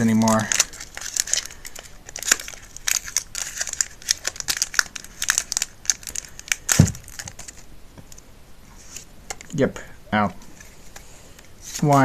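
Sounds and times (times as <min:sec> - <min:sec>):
foil wrapper crinkling and tearing: 0:00.0 - 0:07.7.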